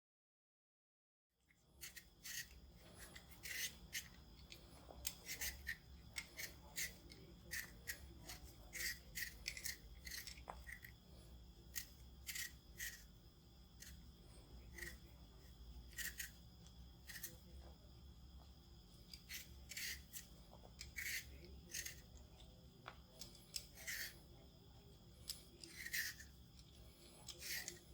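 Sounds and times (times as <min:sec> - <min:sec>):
peeler scraping potato skin: 0:01.5 - 0:11.0, 0:11.6 - 0:14.1, 0:14.7 - 0:17.5, 0:19.1 - 0:22.2, 0:23.2 - 0:24.2, 0:25.2 - 0:27.9.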